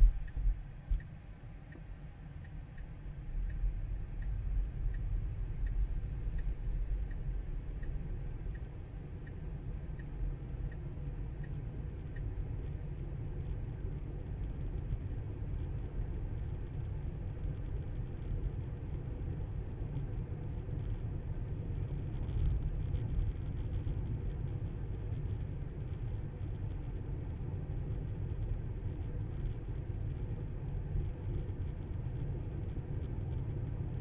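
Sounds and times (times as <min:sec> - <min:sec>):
turn signal ticking: 0:01.7 - 0:12.8.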